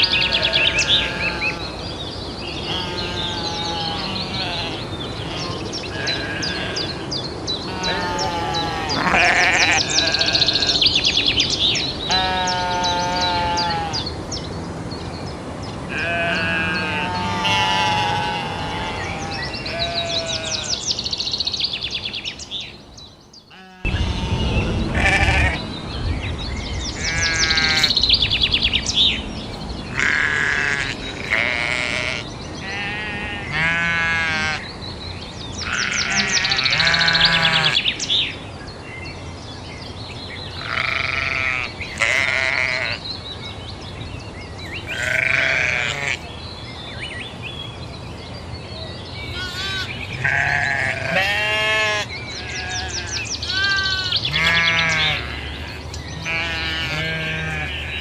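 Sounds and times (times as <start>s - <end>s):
sheep bleating: 0.0s - 1.9s, 2.6s - 7.0s, 7.7s - 10.9s, 12.1s - 14.0s, 15.9s - 20.8s, 23.5s - 25.6s, 29.9s - 34.6s, 35.6s - 37.8s, 40.6s - 43.0s, 44.9s - 46.2s, 49.3s - 58.0s
low background rumble: 23.9s - 32.5s.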